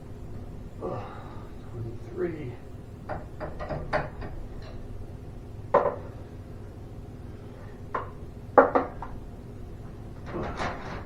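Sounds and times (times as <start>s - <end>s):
steel bars knocking on metal: 3.1s - 4.4s.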